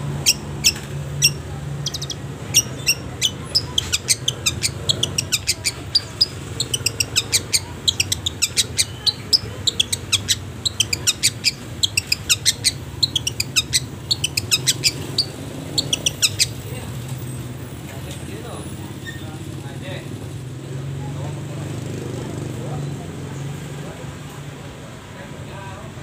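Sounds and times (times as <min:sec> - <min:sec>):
bird singing high sharp chirps: 0:00.1 - 0:16.7.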